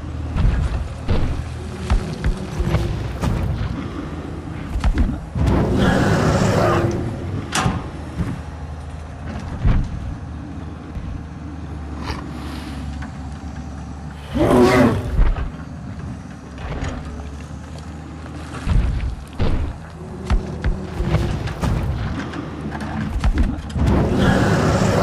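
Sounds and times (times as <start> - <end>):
excavator engine running: 0.0 - 25.0
dinosaur roars: 1.6 - 8.0, 14.1 - 15.6, 23.8 - 25.0.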